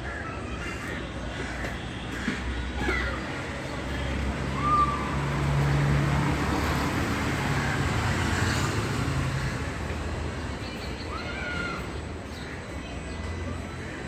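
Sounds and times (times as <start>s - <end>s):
road noise: 0.0s - 14.0s
vehicle engine hum: 1.3s - 14.0s.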